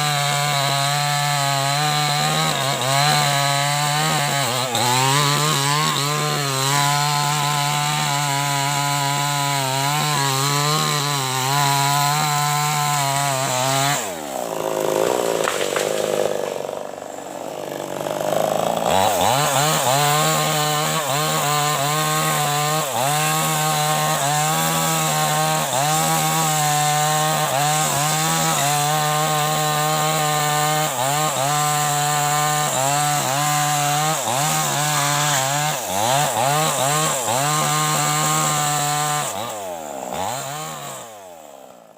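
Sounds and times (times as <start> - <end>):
chainsaw cutting wood: 0.0 - 41.9.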